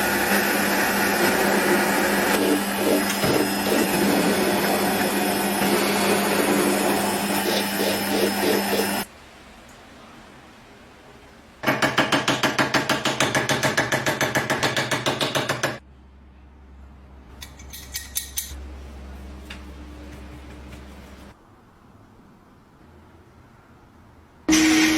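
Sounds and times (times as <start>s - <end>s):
power tool running: 0.0s - 9.1s, 24.5s - 24.9s.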